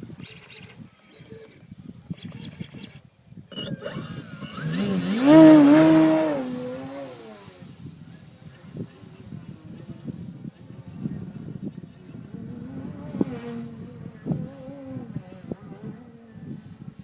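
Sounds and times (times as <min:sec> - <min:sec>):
model plane whining past: 0:03.5 - 0:17.0.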